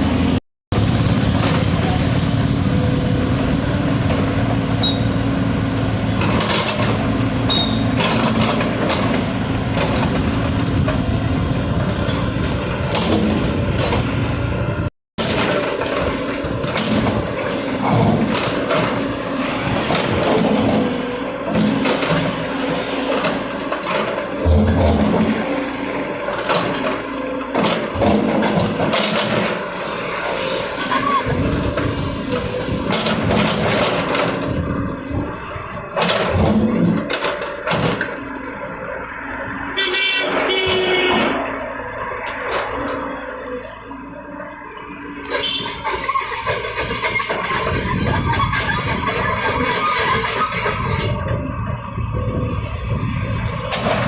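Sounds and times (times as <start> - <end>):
diesel engine running: 0.0 - 54.0
short high squeaks: 7.5 - 8.0, 30.8 - 31.4, 45.2 - 51.2.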